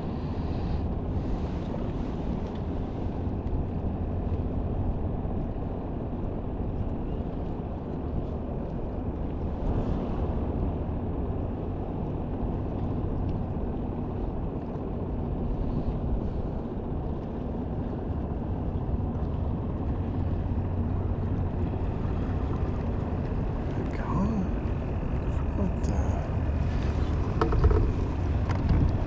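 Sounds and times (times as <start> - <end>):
water and air noise: 0.0 - 29.0
outboard motor running: 8.2 - 29.0.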